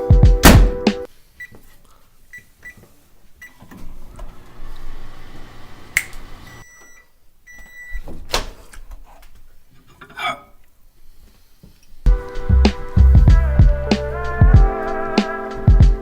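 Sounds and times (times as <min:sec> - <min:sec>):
music with a beat: 0:00.0 - 0:01.1, 0:12.1 - 0:16.0
microwave oven beeping: 0:05.2 - 0:08.0.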